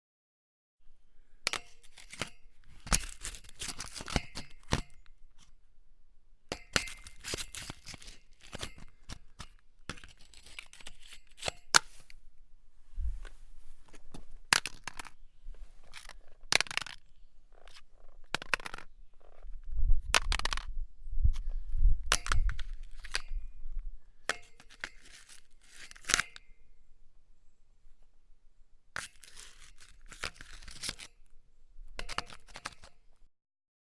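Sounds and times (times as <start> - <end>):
metal objects grating and clattering: 6.5 - 12.1.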